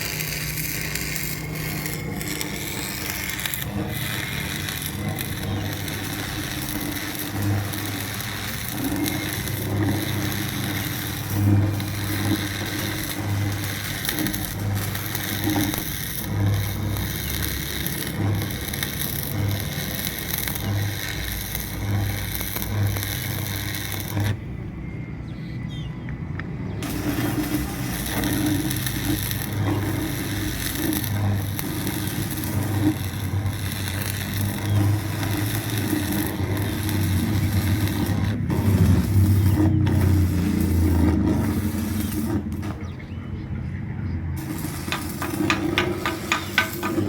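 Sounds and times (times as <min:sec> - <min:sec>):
machine throbbing hum: 0:00.0 - 0:24.6, 0:26.8 - 0:43.0
scraping and rattling: 0:26.8 - 0:43.0, 0:44.4 - 0:47.0.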